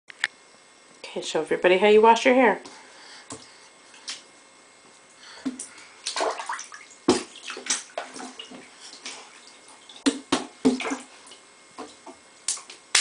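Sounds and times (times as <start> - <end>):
bath water splashing: 5.4 - 13.0.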